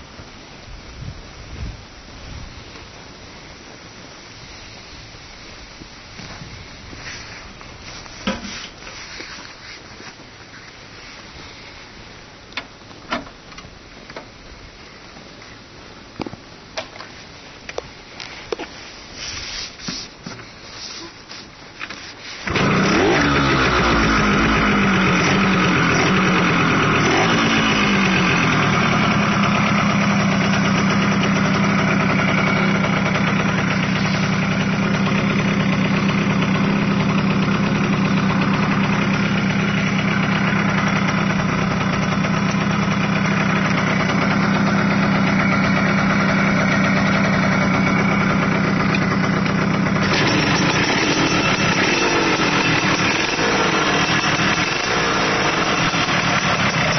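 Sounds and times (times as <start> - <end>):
motorcycle engine revving and idling: 22.4 - 56.9.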